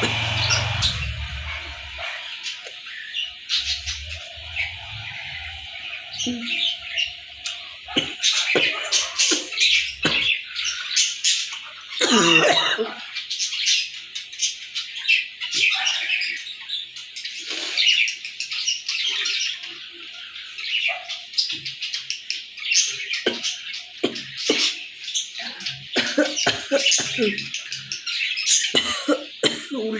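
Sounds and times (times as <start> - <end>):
birds chirping: 0.0 - 29.9
woman coughing: 12.0 - 13.0, 26.0 - 27.4, 28.8 - 29.9.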